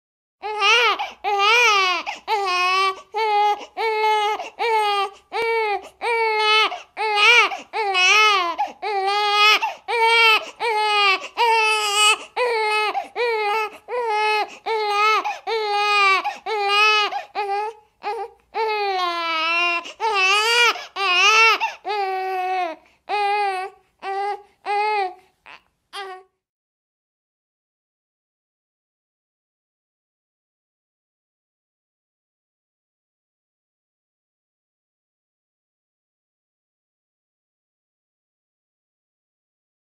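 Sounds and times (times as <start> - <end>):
baby crying: 0.4 - 26.4.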